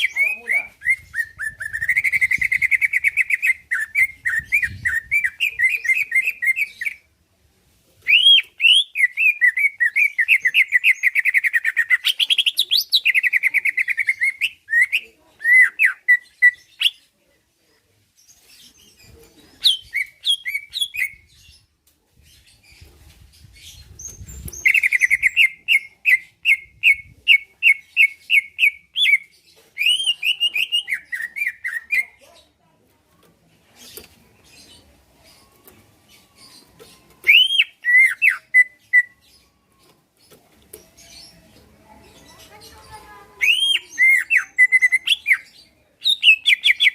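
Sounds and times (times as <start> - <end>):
bird singing fast chirps: 0.0 - 7.0, 36.2 - 39.6.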